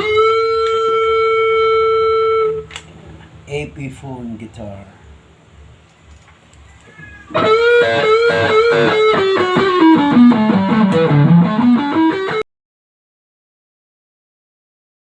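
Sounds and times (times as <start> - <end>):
guitar plucked notes: 0.0 - 2.7, 7.3 - 12.4.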